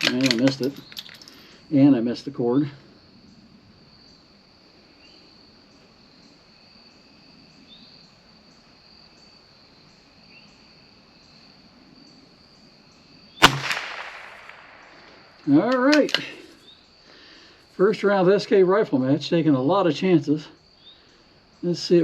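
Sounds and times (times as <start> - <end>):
rifle shot: 13.4 - 15.6.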